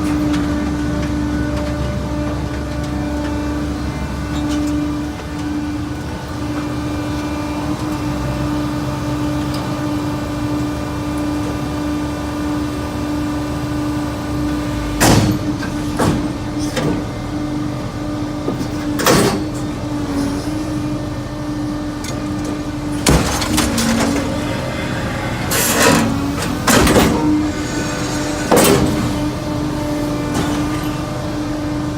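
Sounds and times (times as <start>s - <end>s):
hydraulic hum of baler: 0.0s - 31.9s
metallic bangs and clanks: 22.9s - 29.5s.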